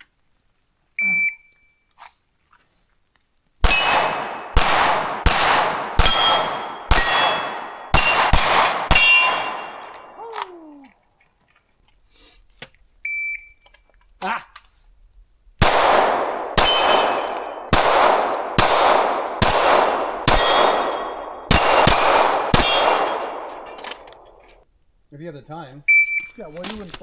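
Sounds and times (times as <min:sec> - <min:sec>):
shot timer beep: 0:01.0 - 0:01.6
pistol shots with ringing: 0:03.6 - 0:10.2, 0:15.6 - 0:24.4.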